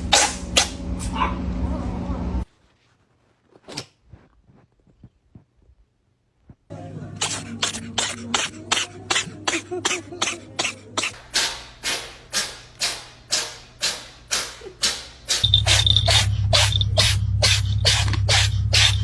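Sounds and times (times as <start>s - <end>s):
steady low hum: 0.0s - 2.5s, 12.6s - 19.0s
rhythmic sharp hissing hits: 11.2s - 19.0s.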